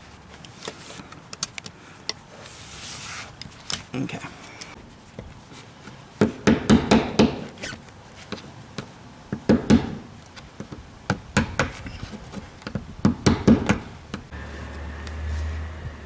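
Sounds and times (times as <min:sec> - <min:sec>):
tool knocking and scraping on lock: 0:08.3 - 0:14.3.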